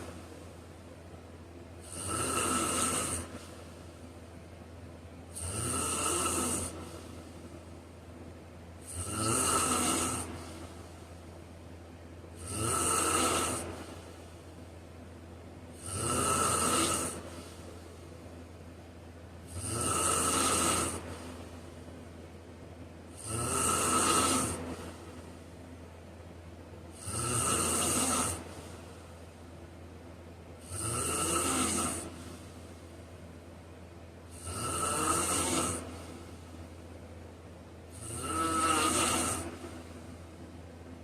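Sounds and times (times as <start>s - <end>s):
steady low hum: 0.0s - 41.0s
man snoring: 1.8s - 3.6s, 5.3s - 7.2s, 8.8s - 11.0s, 12.4s - 14.1s, 15.7s - 17.6s, 19.5s - 21.5s, 23.1s - 25.1s, 26.9s - 28.8s, 30.6s - 32.4s, 34.3s - 36.4s, 37.9s - 39.9s.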